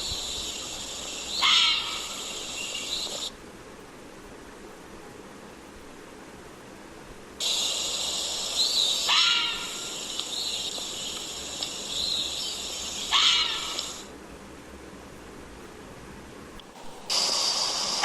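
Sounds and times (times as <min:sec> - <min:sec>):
fisher high cries: 0:00.0 - 0:03.3, 0:07.4 - 0:14.1
steady high hiss: 0:00.0 - 0:18.0.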